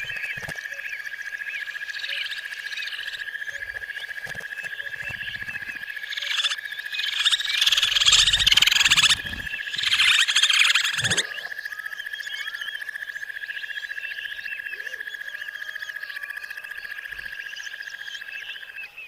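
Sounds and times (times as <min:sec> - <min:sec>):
birds chirping: 0:00.0 - 0:19.0
rasping trilled calls: 0:01.9 - 0:11.7.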